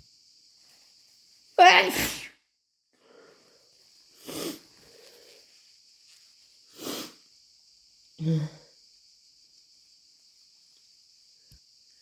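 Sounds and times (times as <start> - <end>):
person sneezing: 1.6 - 2.3
sharp sniffs: 4.1 - 5.5, 6.7 - 7.2.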